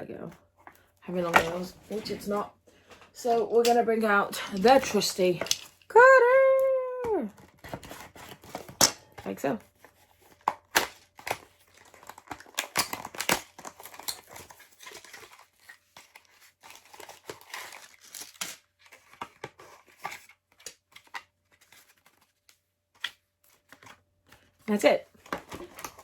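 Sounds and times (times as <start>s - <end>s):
packaging tearing and crinkling: 10.2s - 22.2s, 25.2s - 26.0s
cutter cutting packaging: 10.3s - 15.4s.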